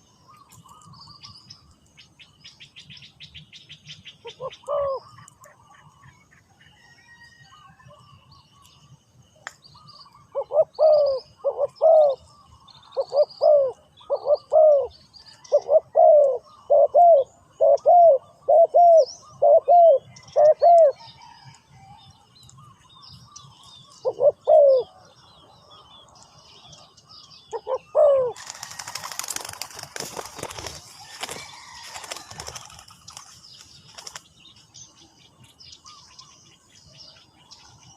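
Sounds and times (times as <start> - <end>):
dove cooing: 4.2 - 5.6, 10.3 - 12.3, 12.9 - 21.4, 24.0 - 25.1, 27.5 - 32.9.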